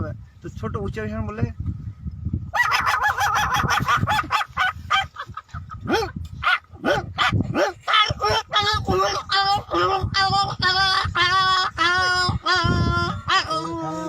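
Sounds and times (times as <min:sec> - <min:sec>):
person imitating puppy yelps: 0:02.6 - 0:05.1, 0:05.8 - 0:14.0.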